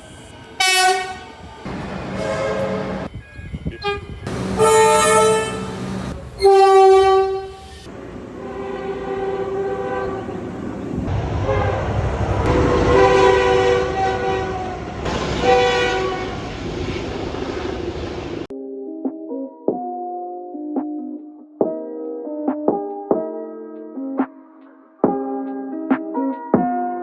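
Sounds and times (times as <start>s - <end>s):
train rumble: 0.0s - 18.5s
train horn blasts: 0.6s - 3.1s, 3.7s - 16.5s.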